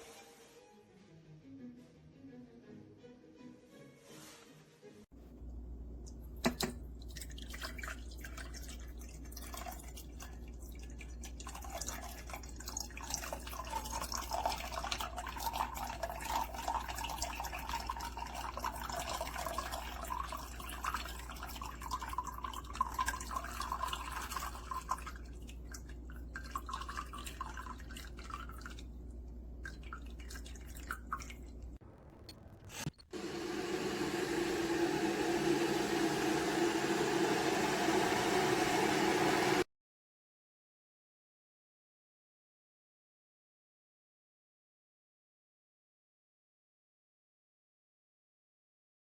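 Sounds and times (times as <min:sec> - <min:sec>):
electric kettle hum: 0:05.2 - 0:07.0, 0:33.1 - 0:39.7.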